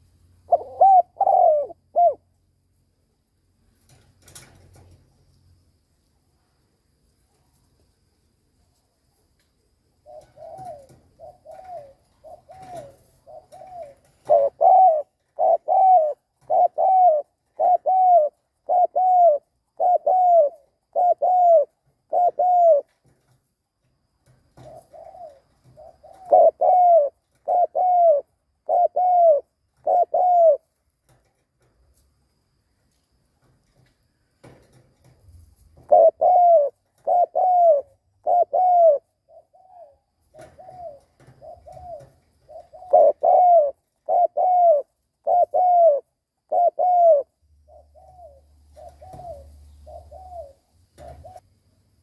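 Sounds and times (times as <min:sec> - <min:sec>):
dove cooing: 0:00.0 - 0:02.4, 0:09.9 - 0:23.3, 0:24.2 - 0:31.2, 0:35.8 - 0:51.4.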